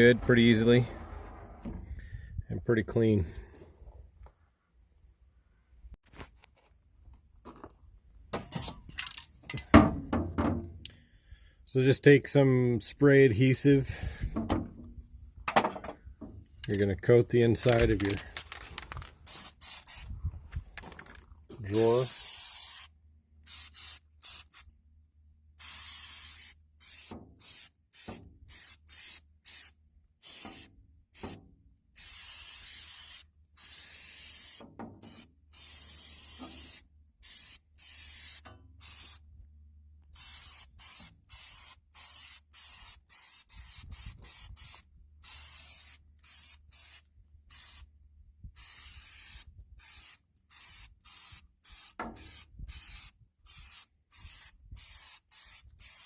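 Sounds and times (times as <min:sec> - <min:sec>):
aerosol can spraying: 0:19.3 - 0:20.0, 0:22.1 - 0:22.9, 0:25.6 - 0:31.4, 0:32.0 - 0:39.2, 0:40.2 - 0:47.8, 0:48.6 - 0:56.0.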